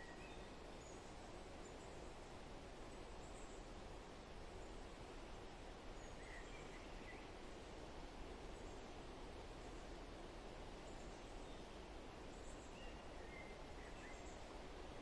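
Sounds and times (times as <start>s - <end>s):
soft bird chirps: 0.0s - 2.1s, 6.0s - 7.4s, 10.8s - 14.6s
faint outdoor background noise: 0.0s - 15.0s.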